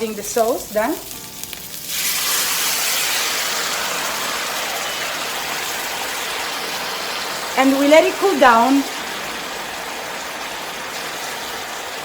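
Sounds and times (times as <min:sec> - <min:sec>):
sauce sizzling in hot pan: 0:00.0 - 0:12.0.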